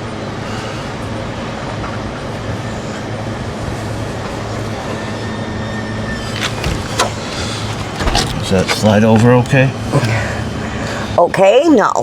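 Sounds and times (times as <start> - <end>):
steady mechanical drone: 0.0 - 12.0.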